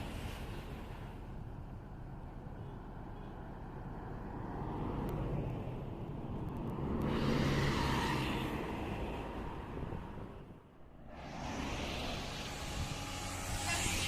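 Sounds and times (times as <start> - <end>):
bus driving past: 0.0 - 14.0
road noise: 0.0 - 14.0.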